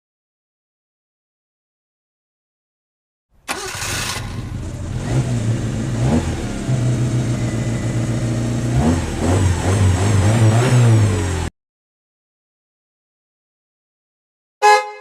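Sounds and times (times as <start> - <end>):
car engine revving: 3.5 - 11.5.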